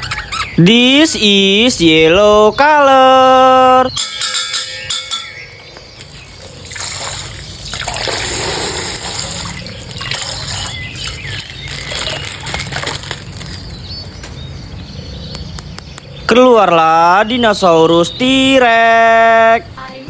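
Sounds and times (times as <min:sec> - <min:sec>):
water splashing and trickling: 0:06.0 - 0:14.0
plastic crinkling: 0:07.6 - 0:14.0.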